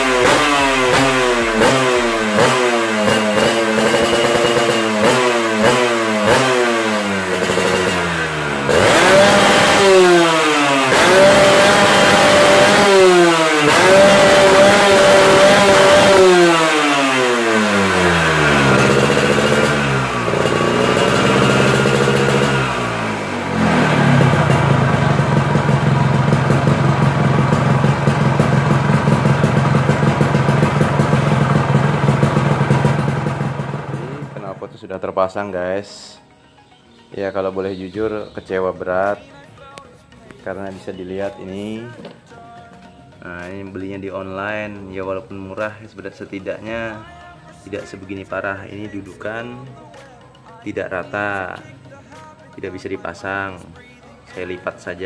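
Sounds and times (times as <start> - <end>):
two-stroke motorcycle engine revving: 0.0 - 34.7.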